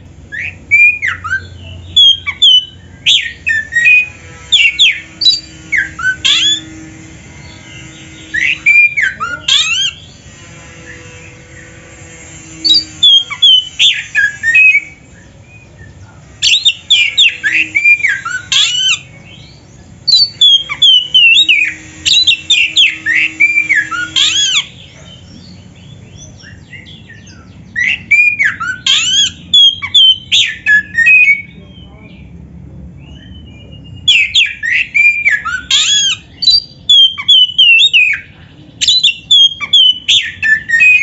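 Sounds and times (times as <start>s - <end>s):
bird singing whistled notes: 0.3s - 32.3s, 33.0s - 41.0s.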